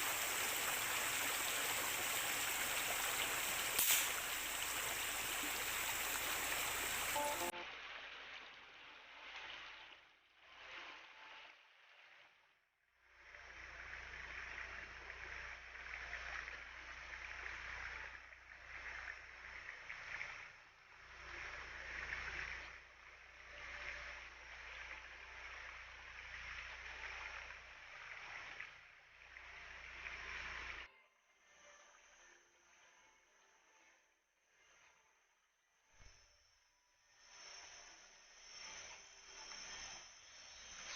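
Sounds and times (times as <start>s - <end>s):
faint rush of water: 0.0s - 30.9s.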